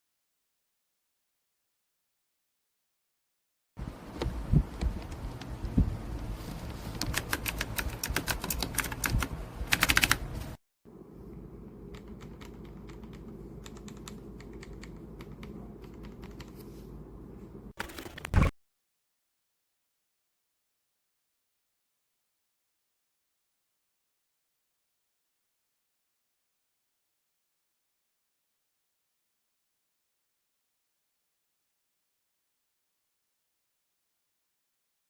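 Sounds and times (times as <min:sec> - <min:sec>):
mechanical keyboard typing: 0:06.8 - 0:10.3, 0:11.9 - 0:16.6, 0:17.8 - 0:18.5.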